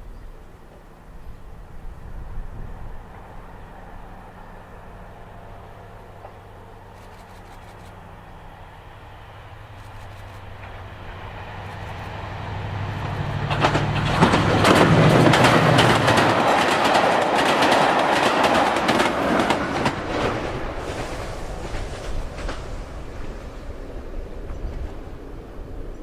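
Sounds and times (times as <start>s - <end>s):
diesel locomotive engine passing: 0.0s - 26.0s
train wheels clattering over rail joints: 9.7s - 25.0s.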